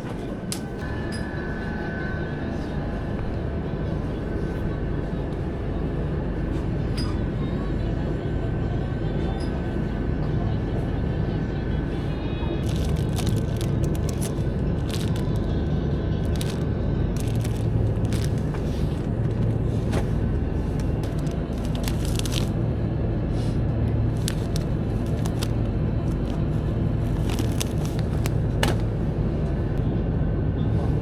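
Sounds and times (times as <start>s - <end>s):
car road noise rumble: 12.6s - 29.8s.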